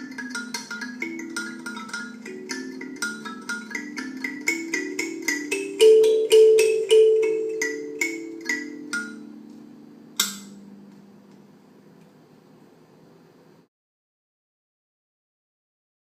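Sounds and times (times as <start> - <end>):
music of struck ringing notes: 0.0 - 10.9.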